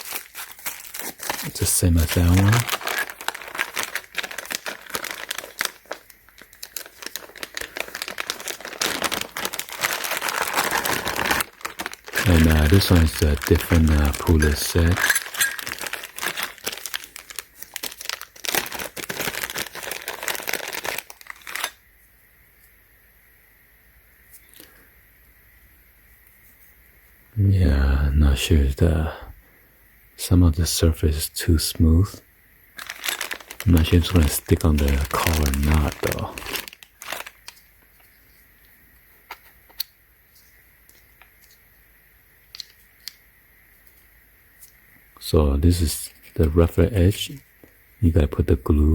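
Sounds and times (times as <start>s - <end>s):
fast irregular crackle: 0.0s - 21.8s, 32.8s - 38.4s
plastic packaging crinkling: 0.0s - 21.8s, 32.8s - 38.6s, 45.8s - 47.6s.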